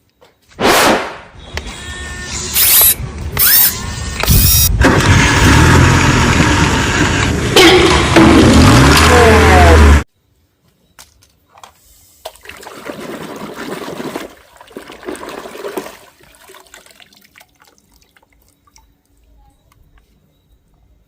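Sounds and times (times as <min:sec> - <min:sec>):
water splashing and trickling: 0:12.1 - 0:20.0.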